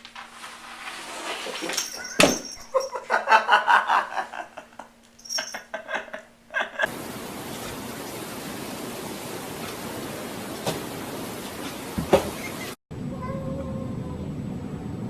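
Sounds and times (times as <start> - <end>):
person laughing: 1.5 - 6.9
steady hiss: 6.9 - 12.8
knock: 12.0 - 12.4.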